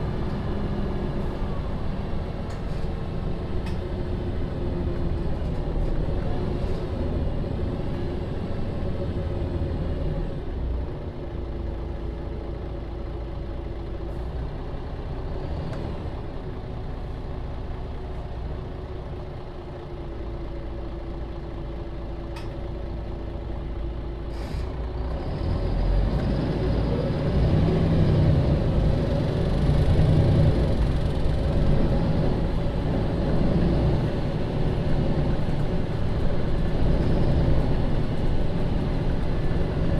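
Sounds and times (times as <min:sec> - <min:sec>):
bus diesel engine: 0:00.0 - 0:39.9.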